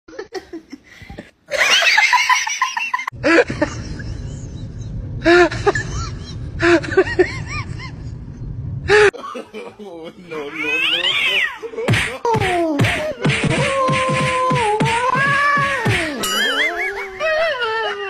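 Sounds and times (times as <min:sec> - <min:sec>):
low rumble: 0:03.1 - 0:09.1
people laughing: 0:16.1 - 0:18.0.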